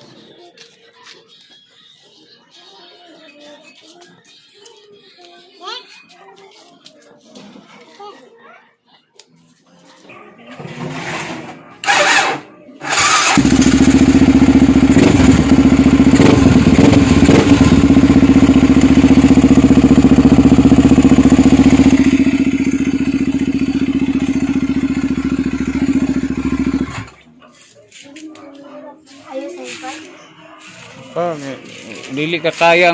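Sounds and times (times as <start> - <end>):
motorcycle engine starting and running: 10.5 - 27.3.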